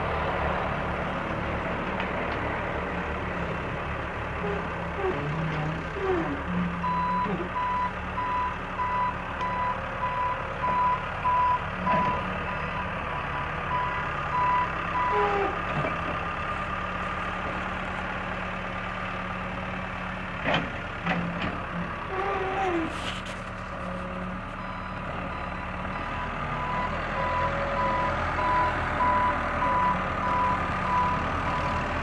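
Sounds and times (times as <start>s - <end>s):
backhoe engine running: 0.0s - 32.0s
reversing alarm beeping: 6.8s - 15.2s, 24.6s - 31.9s.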